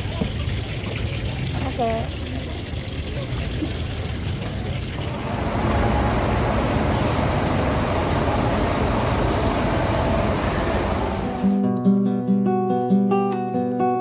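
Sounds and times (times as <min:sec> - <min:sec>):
road traffic rumbling: 0:04.5 - 0:11.6.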